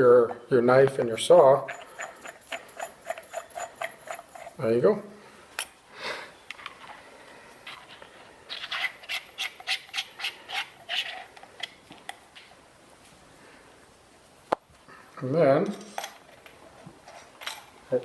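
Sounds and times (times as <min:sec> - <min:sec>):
metal handle sections scraping: 0:01.3 - 0:04.7, 0:07.6 - 0:11.8.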